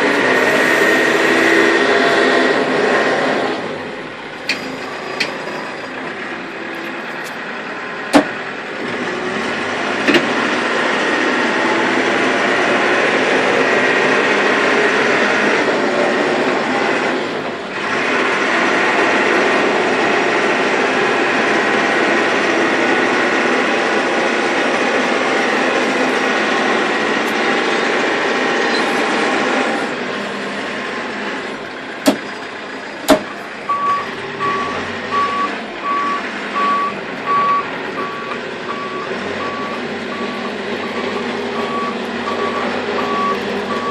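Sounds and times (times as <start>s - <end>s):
backhoe diesel engine revving: 0.0s - 43.9s
sharp knocks: 32.0s - 32.3s, 33.1s - 33.3s
reversing beeper: 33.7s - 43.9s.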